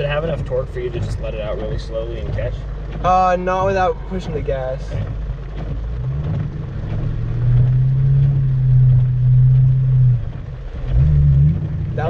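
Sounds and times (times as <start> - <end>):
car engine pulling away: 0.0 - 12.0.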